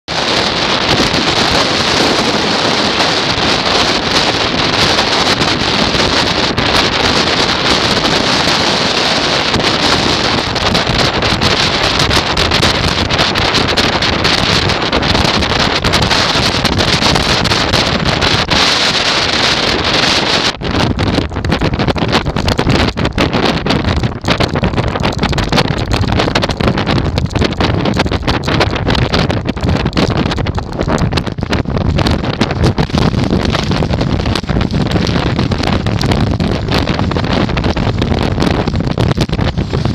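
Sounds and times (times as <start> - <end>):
waves breaking on shore: 0.1 - 20.5
wind buffeting microphone: 0.1 - 39.9.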